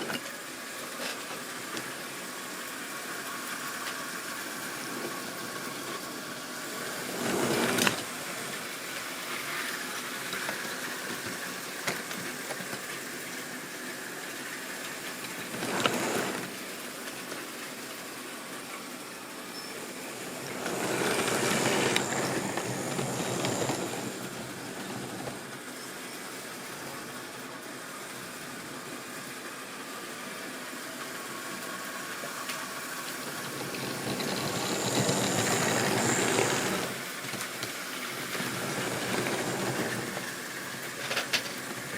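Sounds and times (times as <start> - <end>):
model train motor whirring: 3.4 - 13.5, 14.1 - 16.7, 19.5 - 27.2, 32.4 - 41.9
wheels clicking over rail joints: 7.0 - 8.2, 15.2 - 16.6, 19.9 - 25.4, 32.6 - 41.9.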